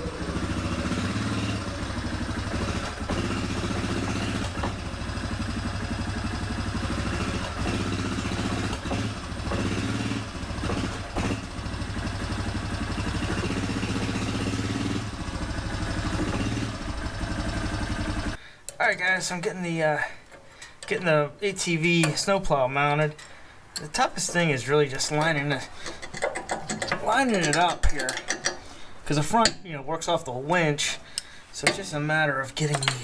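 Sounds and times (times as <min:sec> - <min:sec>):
small engine idling: 0:00.0 - 0:18.4.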